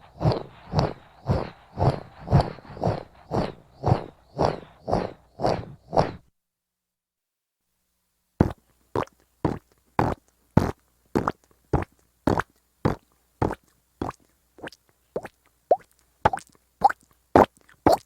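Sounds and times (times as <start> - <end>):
cartoon footsteps: 0.0 - 6.3.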